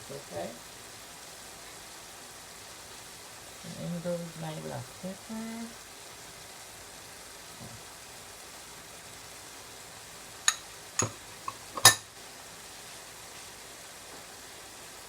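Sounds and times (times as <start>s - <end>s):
pan hissing: 10.3s - 12.4s
utensils clinking against pot: 10.5s - 12.1s.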